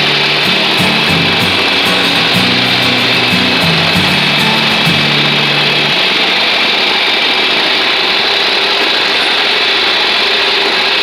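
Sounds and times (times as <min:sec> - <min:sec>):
tractor engine running: 0:00.0 - 0:10.1.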